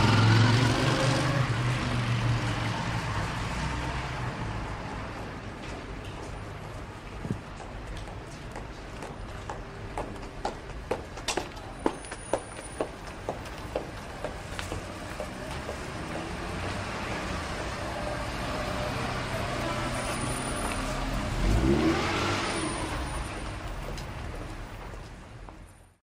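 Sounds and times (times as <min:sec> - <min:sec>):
vehicle passing close: 0:00.0 - 0:04.5, 0:14.7 - 0:23.7
street traffic: 0:00.0 - 0:26.0.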